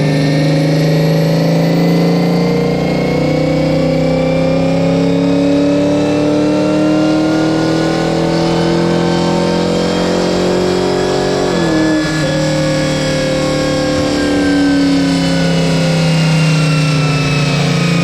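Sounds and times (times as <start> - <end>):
vehicle engine under full load: 0.0 - 18.0.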